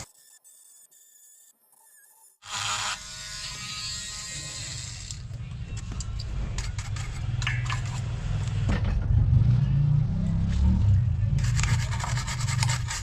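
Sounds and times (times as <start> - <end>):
small electric motor humming: 0.0 - 5.2.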